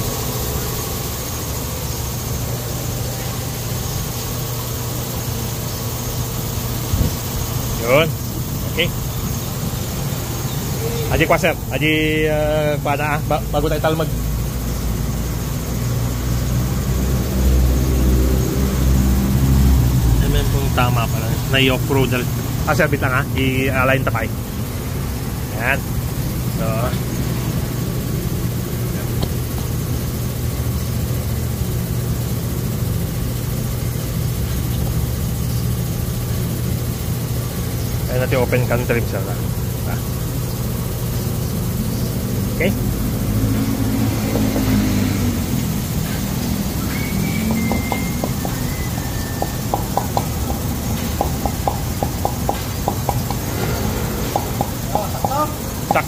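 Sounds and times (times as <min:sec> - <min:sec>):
engine idling: 0:00.0 - 0:56.0
steady low rumble: 0:49.6 - 0:56.0.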